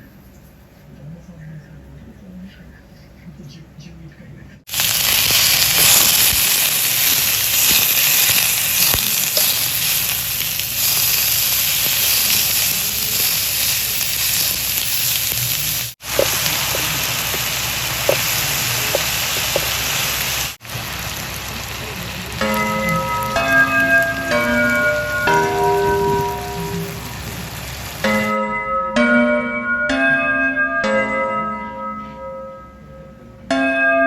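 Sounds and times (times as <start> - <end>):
frying in hot oil sizzle: 4.7 - 28.4.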